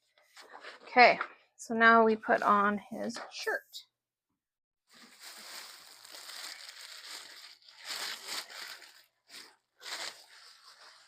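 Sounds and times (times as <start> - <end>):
fabric crinkling and rustling: 4.9 - 11.0.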